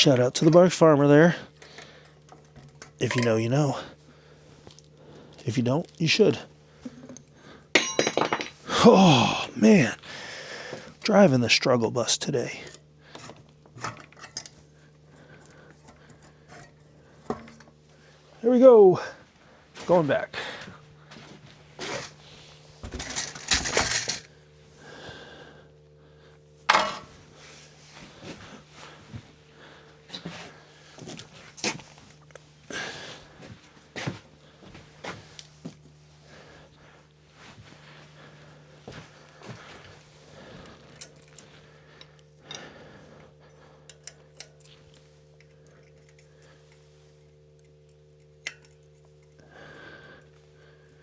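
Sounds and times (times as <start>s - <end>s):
low steady hum: 0.0s - 51.0s
metal parts clinking: 1.7s - 3.5s, 7.8s - 8.6s, 22.9s - 24.3s, 26.7s - 27.1s
sharp metal clank: 26.7s - 27.1s
wrench clicks and taps: 48.4s - 48.8s.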